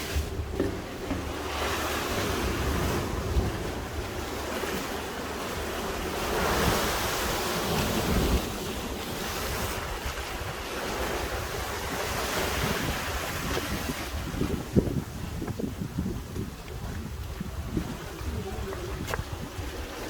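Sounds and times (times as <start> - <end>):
sea waves washing on shore: 0.0 - 20.0
wind buffeting microphone: 0.0 - 20.0.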